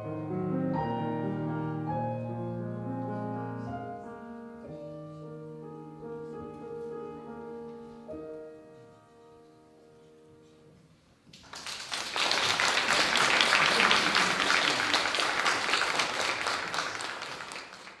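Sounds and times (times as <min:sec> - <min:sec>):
audience applause: 0:11.3 - 0:18.0.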